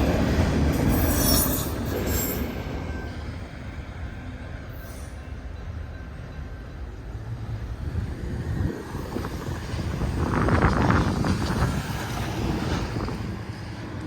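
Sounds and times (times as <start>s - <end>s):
freight cars rolling past: 0.0s - 14.0s.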